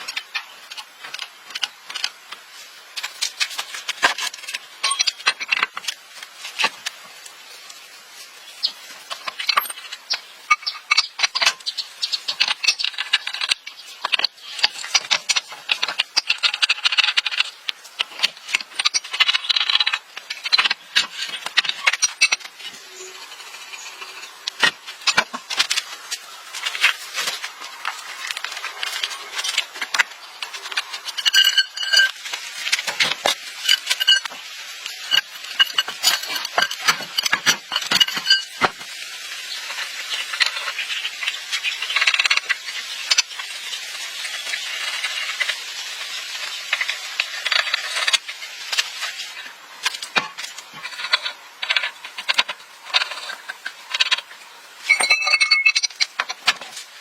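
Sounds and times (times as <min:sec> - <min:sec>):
metal tools clinking and rattling: 0:03.0 - 0:05.9, 0:12.3 - 0:22.6, 0:28.9 - 0:38.8, 0:54.8 - 0:56.7.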